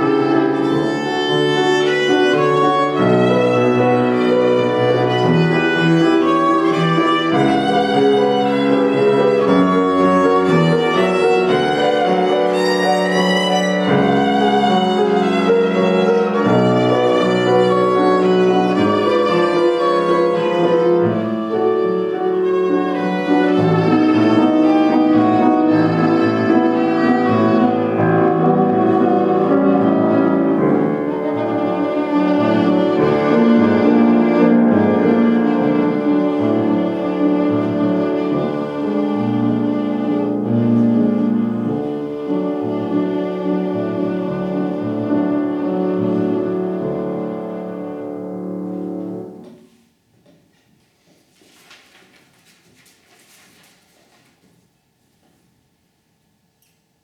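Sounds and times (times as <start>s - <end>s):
violin melody with vibrato: 0.0s - 49.2s
piano accompaniment: 0.0s - 50.0s.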